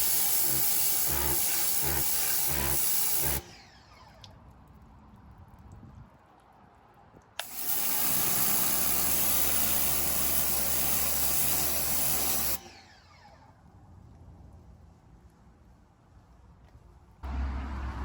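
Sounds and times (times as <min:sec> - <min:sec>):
water jet hissing: 0:00.0 - 0:03.4
pressure washer motor humming: 0:00.0 - 0:03.8, 0:07.4 - 0:13.1.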